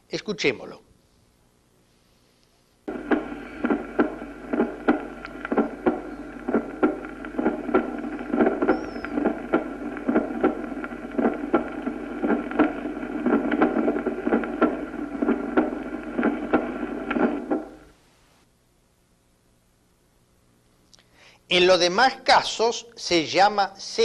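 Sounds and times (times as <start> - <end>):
steady hiss and hum: 0.0 - 24.0
heartbeat: 2.9 - 17.9.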